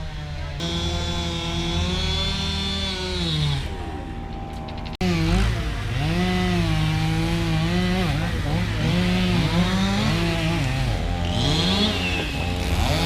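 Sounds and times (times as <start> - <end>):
chainsaw cutting: 0.0 - 13.0.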